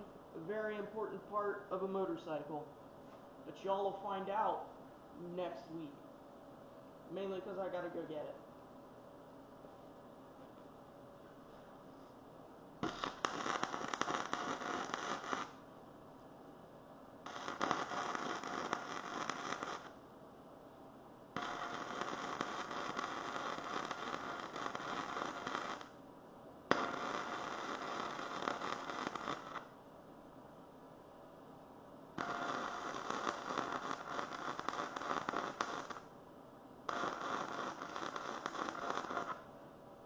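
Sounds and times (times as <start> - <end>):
faint steady hum: 0.0 - 40.0
arc welding crackling: 12.8 - 15.6, 17.2 - 20.0, 21.4 - 26.0, 26.7 - 29.8, 32.2 - 36.1, 36.9 - 39.5.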